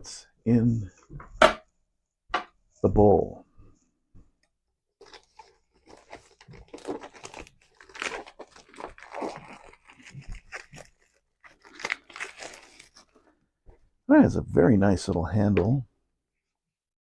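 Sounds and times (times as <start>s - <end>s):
plastic packaging crinkling: 5.0s - 13.4s.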